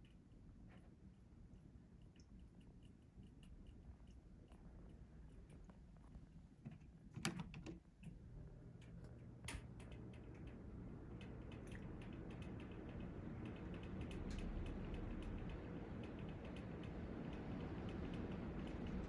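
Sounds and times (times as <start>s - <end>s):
ceiling fan clicks: 0.0s - 19.0s
ceiling fan whirring: 0.0s - 19.0s
light rapid ticking: 9.8s - 19.0s.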